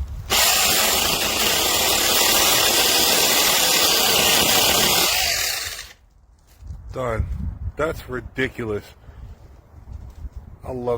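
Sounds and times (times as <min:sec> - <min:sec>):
electric chainsaw cutting branch: 0:00.3 - 0:06.0.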